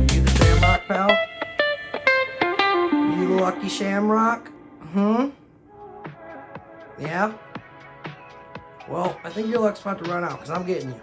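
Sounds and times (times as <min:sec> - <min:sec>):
plucked guitar melody: 0:00.0 - 0:05.0.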